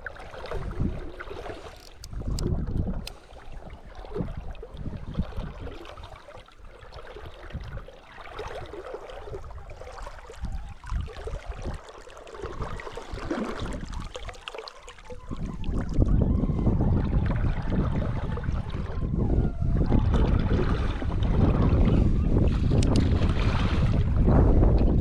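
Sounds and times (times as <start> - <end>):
wind buffeting microphone: 0.0 - 25.0
river water running and splashing: 3.3 - 15.4.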